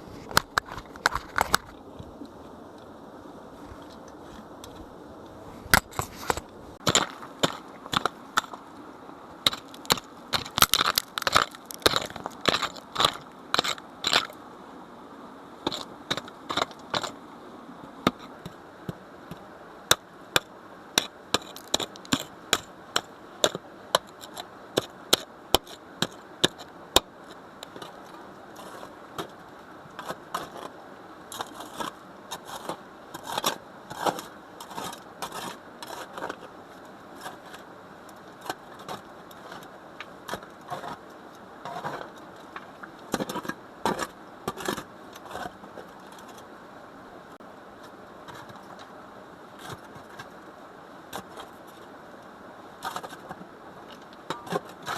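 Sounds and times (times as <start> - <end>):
sharp cracks and crunches: 0.1 - 1.8, 5.7 - 8.6, 9.5 - 14.4
scraping: 5.4 - 8.6, 9.5 - 14.4.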